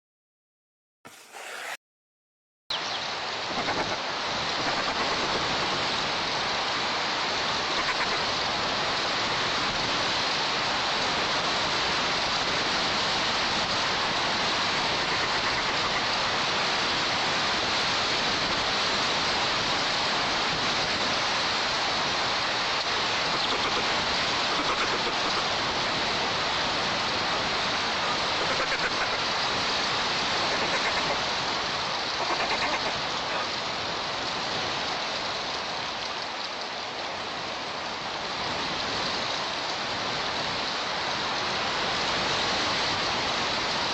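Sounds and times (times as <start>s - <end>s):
strong wind on microphone: 2.8s - 35.3s.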